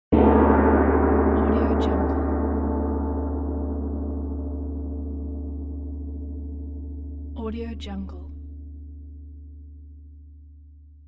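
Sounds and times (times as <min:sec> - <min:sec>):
gong ringing: 0:00.1 - 0:07.3.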